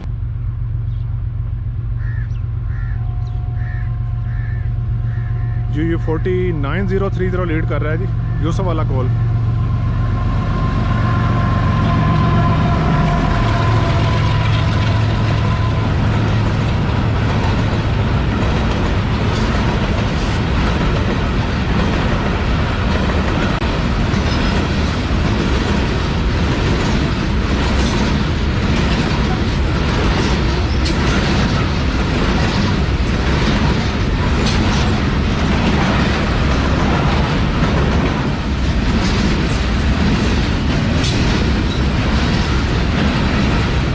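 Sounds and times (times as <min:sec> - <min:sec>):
diesel locomotive engine droning: 0:00.0 - 0:43.9
train wheels clickety-clack: 0:11.2 - 0:43.9.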